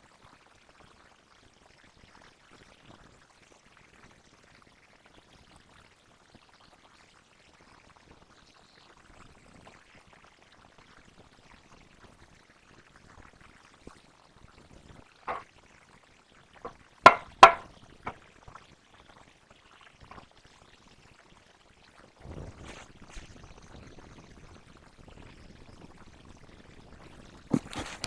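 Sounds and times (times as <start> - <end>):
handling noise: 17.1 - 17.7
hard objects knocking: 17.1 - 17.7.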